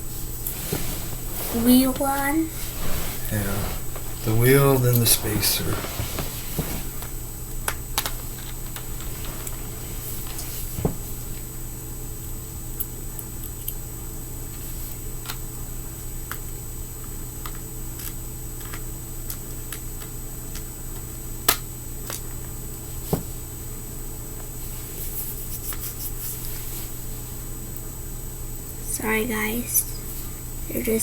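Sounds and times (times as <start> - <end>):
steady low hum: 0.0 - 31.0
small clicks and taps of parts: 17.4 - 20.7.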